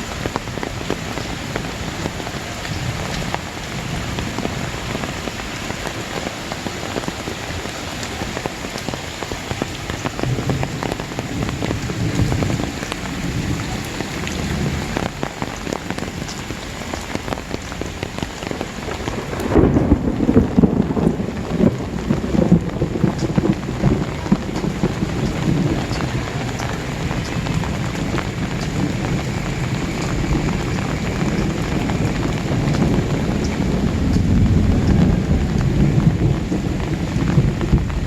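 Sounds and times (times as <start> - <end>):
heavy rain: 0.0 - 38.0
low rumble: 19.0 - 38.0.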